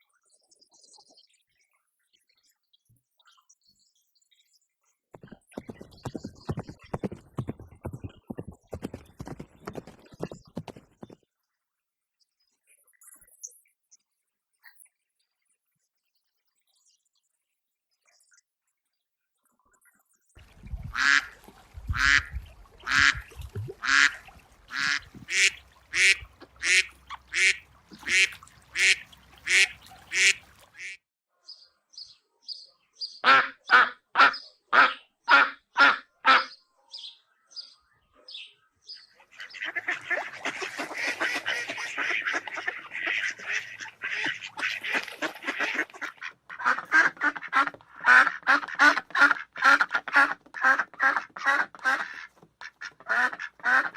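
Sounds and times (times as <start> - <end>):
ducks quacking: 20.9 - 31.0, 33.2 - 36.6, 39.1 - 53.9
chatter of many birds: 31.4 - 47.8.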